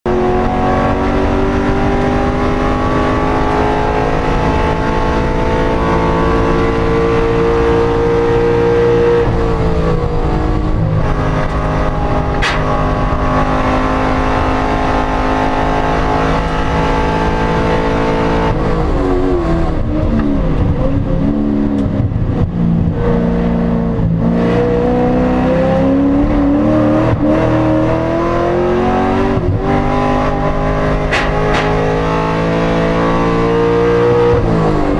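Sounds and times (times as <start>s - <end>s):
car engine under load: 0.1s - 34.9s
sharp click: 12.4s - 12.7s, 31.0s - 31.9s.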